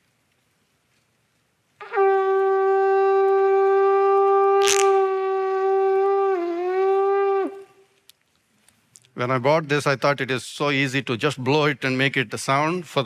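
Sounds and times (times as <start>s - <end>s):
horn long steady note: 1.8s - 7.8s.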